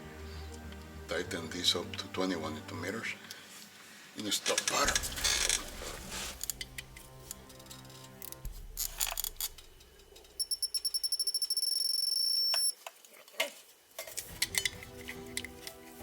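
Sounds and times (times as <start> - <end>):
torque wrench beeping: 10.4 - 12.8.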